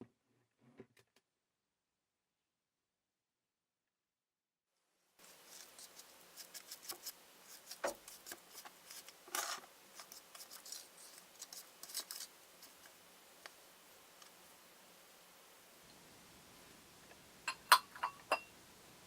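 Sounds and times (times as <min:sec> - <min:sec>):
kitchen tools clicking and scraping: 0:05.5 - 0:12.9.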